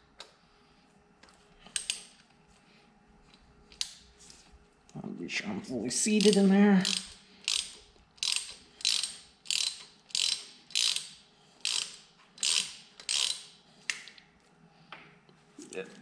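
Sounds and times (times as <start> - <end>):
ratchet wrench clicking: 6.2 - 13.6.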